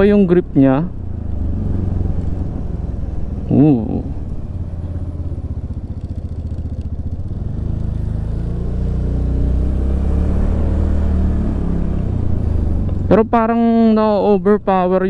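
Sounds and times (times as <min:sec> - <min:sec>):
scooter engine running: 0:01.0 - 0:11.8.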